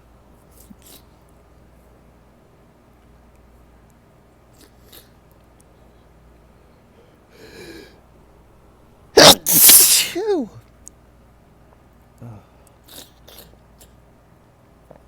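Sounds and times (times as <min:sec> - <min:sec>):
breath drawn in: 0:09.2 - 0:10.5
person sniffing: 0:09.2 - 0:10.5
person sneezing: 0:09.2 - 0:10.6.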